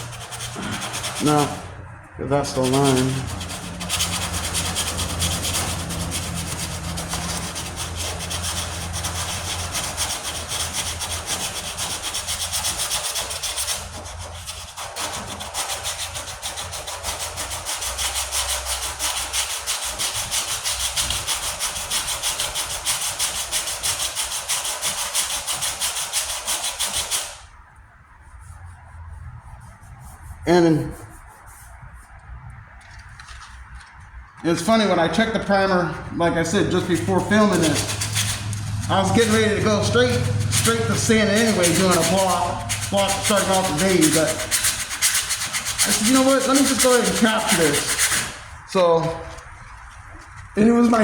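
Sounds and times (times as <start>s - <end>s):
sandpaper rasping on metal: 0.0s - 1.8s, 2.4s - 27.5s, 36.4s - 48.7s.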